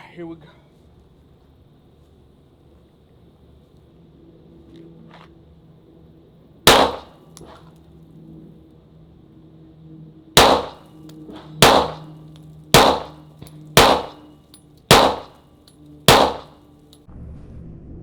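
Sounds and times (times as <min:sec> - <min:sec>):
pistol shots: 0:06.7 - 0:07.6, 0:10.4 - 0:13.2, 0:13.8 - 0:14.3, 0:14.9 - 0:15.4, 0:16.1 - 0:16.6.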